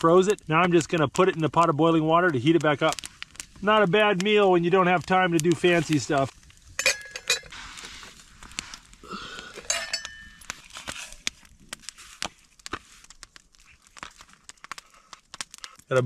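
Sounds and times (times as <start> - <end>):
cooking gear clinking and knocking: 6.8 - 7.5, 9.4 - 11.0
ringing metal clinks: 9.7 - 10.4.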